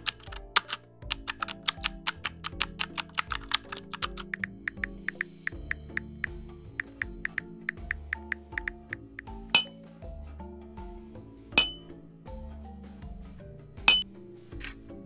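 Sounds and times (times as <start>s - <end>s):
background music: 0.0s - 15.0s
loud sharp ringing clicks: 11.6s - 11.8s.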